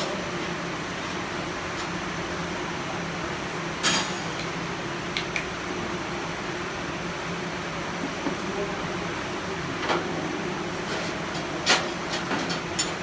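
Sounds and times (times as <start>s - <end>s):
sharp metallic clank: 3.8s - 4.4s.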